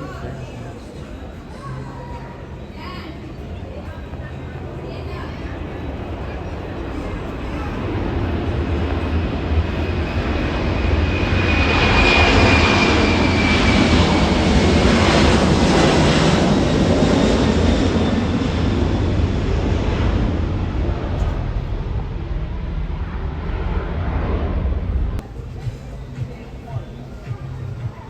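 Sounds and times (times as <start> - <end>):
airplane engine rumble: 0.0 - 28.0.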